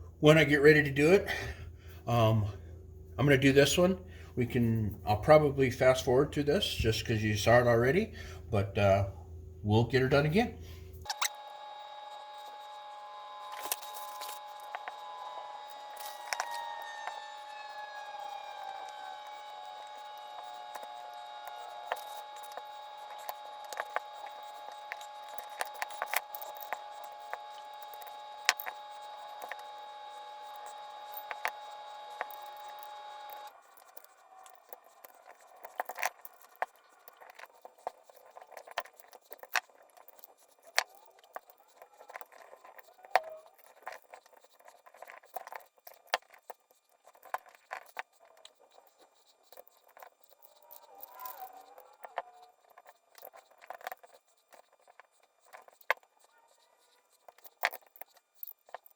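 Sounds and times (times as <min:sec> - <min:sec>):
steady multi-tone hum: 0:00.0 - 0:39.4
metal parts and tools clicking: 0:13.4 - 0:58.9.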